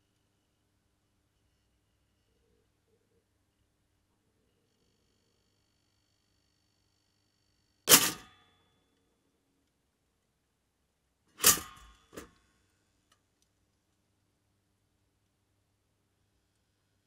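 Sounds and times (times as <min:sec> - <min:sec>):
toaster lever clacking: 0:11.4 - 0:12.2.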